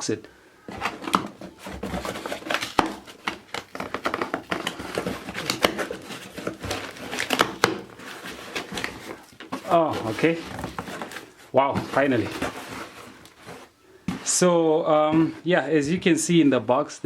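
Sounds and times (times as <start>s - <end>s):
cardboard box being torn open: 0.8s - 13.2s.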